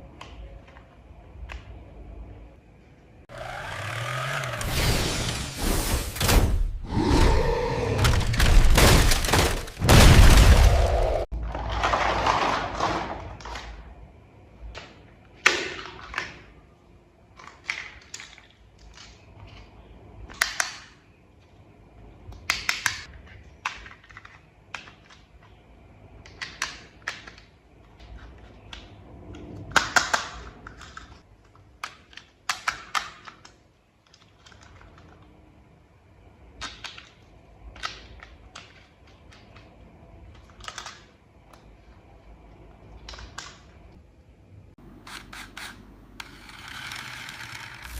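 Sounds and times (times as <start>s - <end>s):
plastic toy parts clicking: 26.2s - 35.3s, 36.6s - 41.6s, 45.0s - 47.9s.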